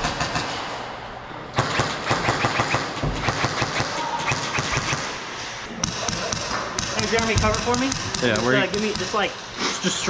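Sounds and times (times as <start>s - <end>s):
airsoft guns firing rapidly: 1.6s - 5.2s.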